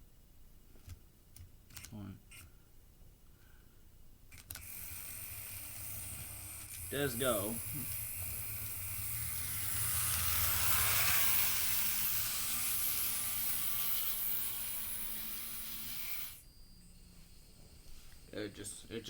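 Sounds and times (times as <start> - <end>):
model train motor whirring: 4.3 - 19.0.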